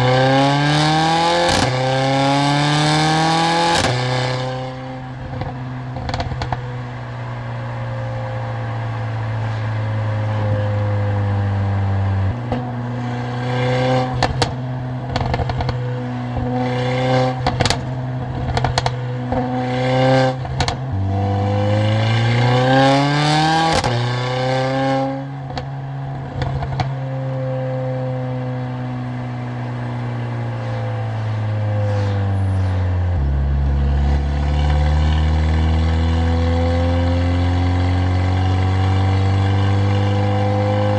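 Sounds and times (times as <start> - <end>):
car engine and loud exhaust: 0.0 - 40.9
exhaust pops: 5.2 - 6.7, 14.1 - 16.5, 17.4 - 19.5, 20.4 - 21.0, 25.5 - 27.0.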